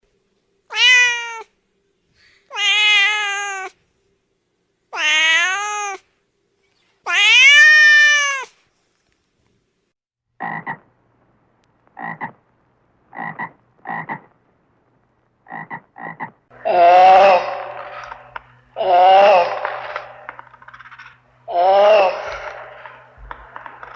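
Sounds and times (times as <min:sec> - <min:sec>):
cat meowing: 0:00.7 - 0:01.5, 0:02.5 - 0:03.8, 0:04.9 - 0:06.0, 0:07.0 - 0:08.6.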